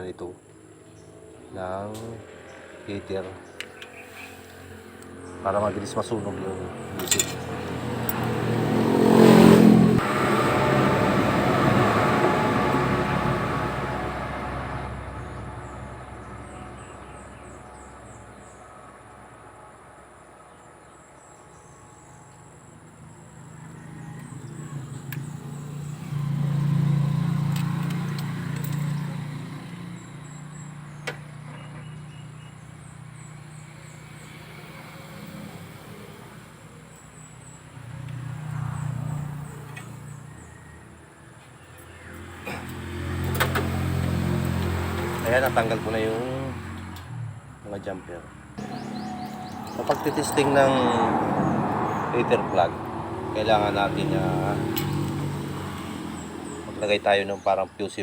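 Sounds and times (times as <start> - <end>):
vehicles passing: 0.0 - 58.0
faint high chirping: 48.6 - 52.0.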